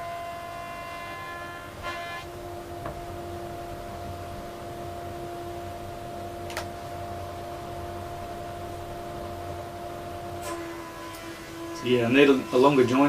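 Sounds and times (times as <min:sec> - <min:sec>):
jointer motor hum and whine: 0:00.0 - 0:13.0.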